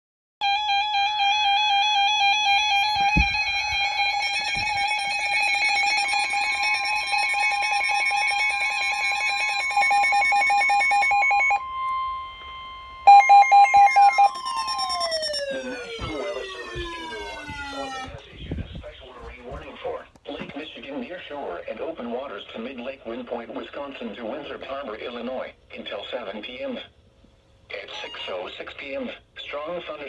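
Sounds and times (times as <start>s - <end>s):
steady higher tone: 11.6s - 18.2s
tone sliding down in pitch: 11.6s - 18.2s
short loud beeps: 13.1s - 18.2s
warbling pulsing alert tone: 13.7s - 18.2s.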